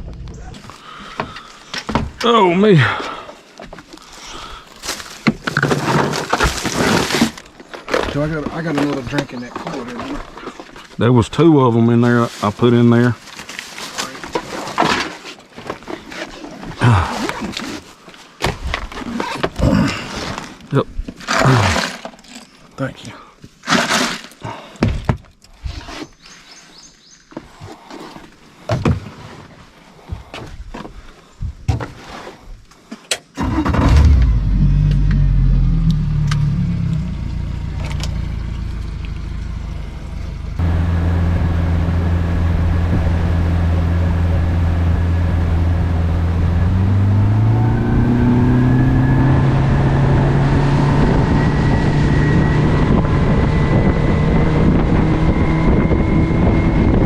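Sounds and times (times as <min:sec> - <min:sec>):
outboard motor running: 0:33.9 - 0:57.0.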